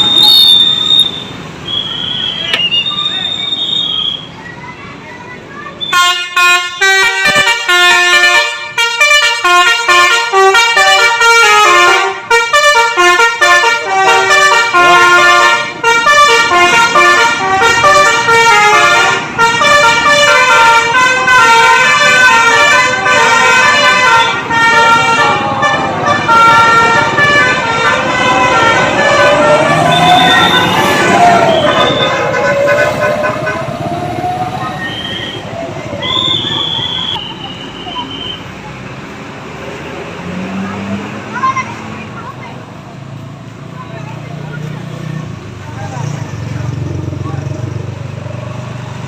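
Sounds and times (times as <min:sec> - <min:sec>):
bus musical horn melody: 0:05.8 - 0:34.0
rushing noise: 0:24.3 - 0:41.5.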